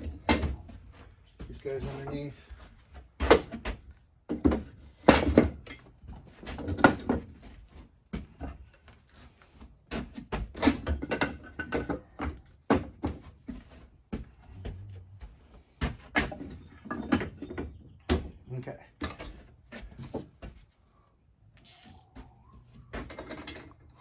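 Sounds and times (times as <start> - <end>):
metal parts knocking and clunking: 23.0 - 24.0.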